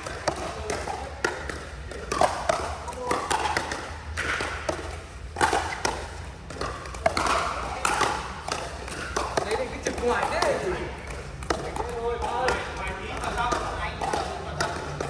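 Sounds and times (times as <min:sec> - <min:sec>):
paddles striking ball: 0:00.0 - 0:15.0
people talking in background: 0:07.2 - 0:15.0.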